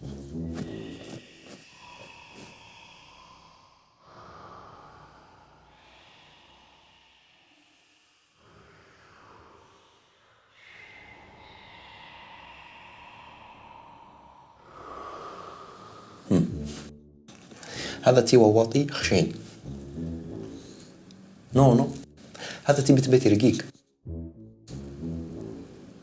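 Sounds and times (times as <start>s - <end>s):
person snoring: 0.0s - 7.2s, 8.4s - 23.6s.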